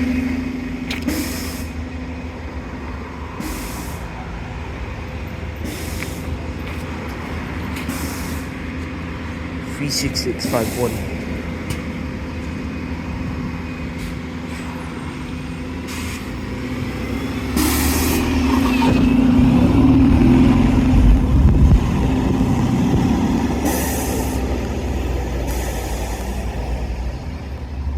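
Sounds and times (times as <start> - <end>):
bus engine running: 0.0 - 27.9
air hiss bursts: 1.1 - 1.8, 3.4 - 4.1, 7.8 - 8.5, 17.5 - 18.6, 23.6 - 24.5.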